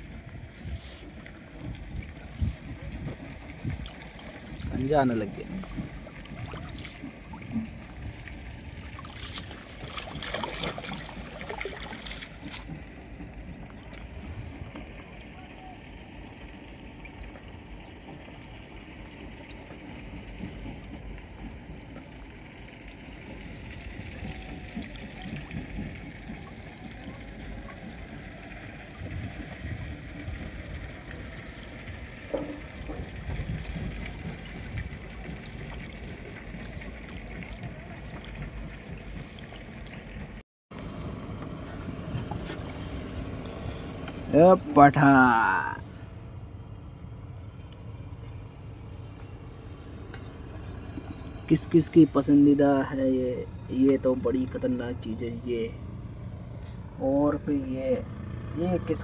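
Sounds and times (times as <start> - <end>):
wind buffeting microphone: 0.0 - 11.7, 28.8 - 45.0
water sloshing around boat: 0.0 - 59.0.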